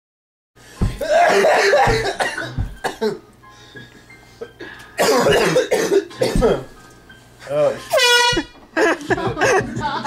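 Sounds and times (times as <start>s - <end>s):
low thumps: 1.8s - 3.0s, 8.2s - 10.0s.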